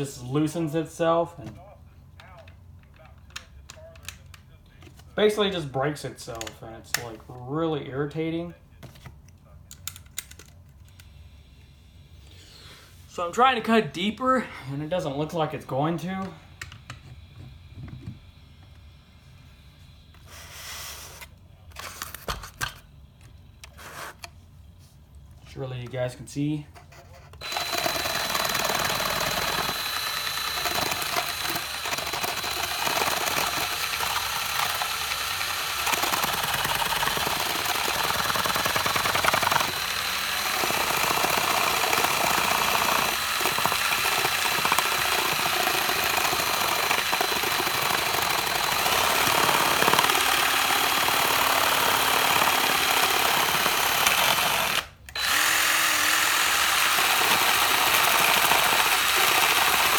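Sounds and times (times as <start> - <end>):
power drill running: 27.4 - 59.9.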